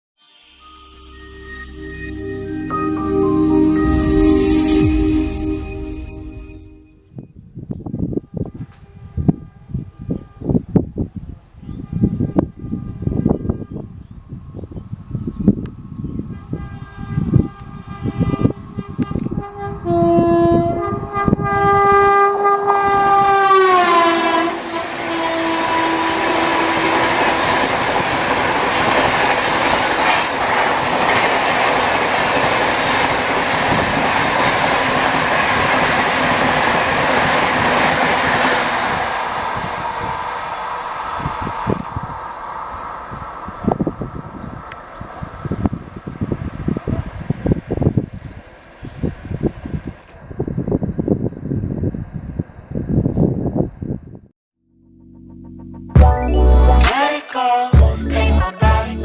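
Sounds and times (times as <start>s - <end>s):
locomotive horn blasts: 8.0s - 11.0s, 11.6s - 14.1s, 16.2s - 30.4s
train wheels on rails: 22.7s - 47.8s.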